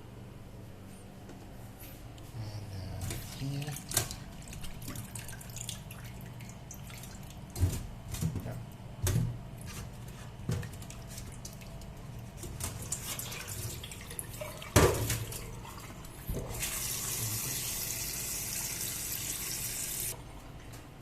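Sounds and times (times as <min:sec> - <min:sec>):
tap water running into sink: 0:13.0 - 0:20.1.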